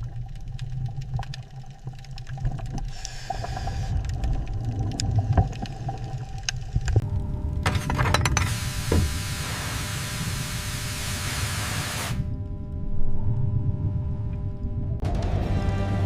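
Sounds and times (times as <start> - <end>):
steady low rumble: 0.0 - 11.2, 12.2 - 16.0.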